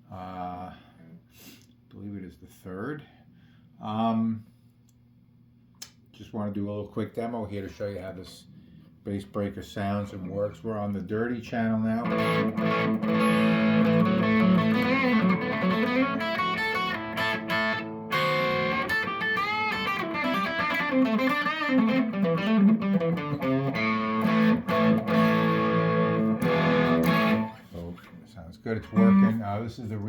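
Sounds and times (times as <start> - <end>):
overdriven electric guitar: 12.0 - 27.6, 29.0 - 29.4.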